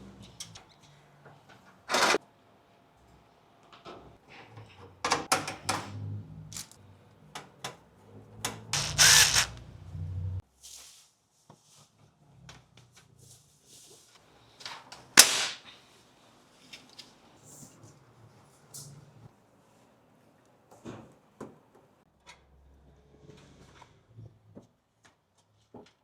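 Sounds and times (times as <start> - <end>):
brief buzzing burst: 8.8 - 9.6.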